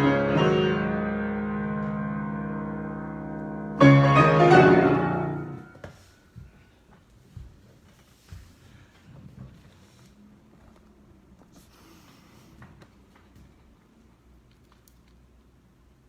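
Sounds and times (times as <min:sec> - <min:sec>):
piano chords: 0:00.0 - 0:05.8.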